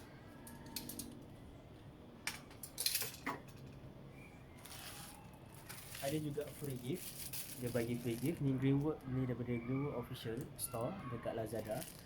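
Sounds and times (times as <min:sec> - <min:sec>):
small metal parts clinking: 0:00.4 - 0:01.2, 0:02.3 - 0:03.8, 0:04.6 - 0:08.9, 0:11.5 - 0:12.0
soft rustle: 0:04.6 - 0:08.4.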